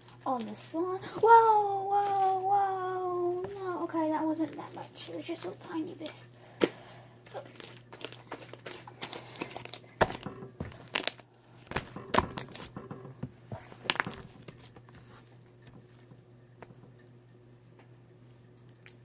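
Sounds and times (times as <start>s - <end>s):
faint low hum: 0.0s - 19.0s
slime crackling and popping: 7.3s - 12.7s.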